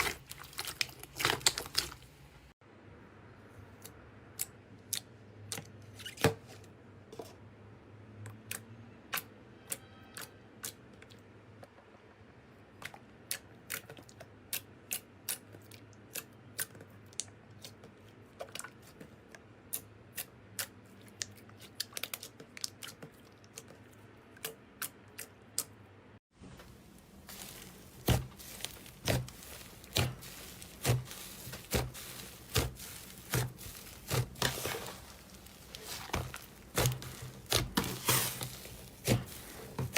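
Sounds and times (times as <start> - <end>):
slime squelching: 0.0 - 2.5, 26.4 - 39.9.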